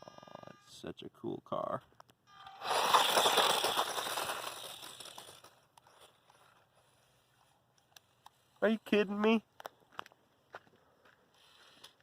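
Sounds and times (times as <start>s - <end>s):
toy truck tires scraping dirt: 2.4s - 7.6s.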